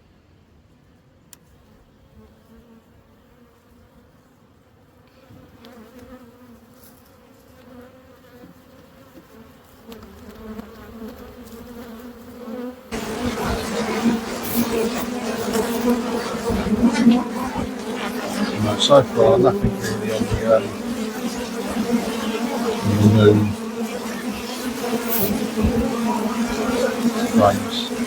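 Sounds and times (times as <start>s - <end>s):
honey bees buzzing: 12.4s - 28.0s.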